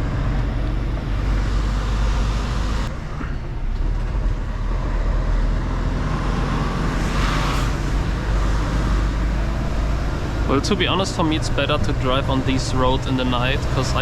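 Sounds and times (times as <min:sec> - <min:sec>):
truck diesel engine running: 0:00.0 - 0:14.0
tyre and road noise: 0:00.0 - 0:14.0
short rush of hiss: 0:06.8 - 0:09.5.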